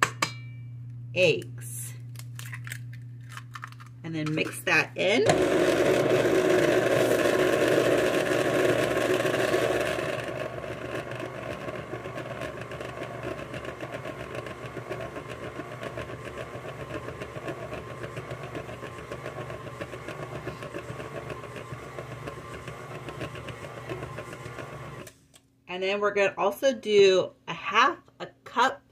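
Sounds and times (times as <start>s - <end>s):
electric mixer beating batter: 5.2s - 25.1s.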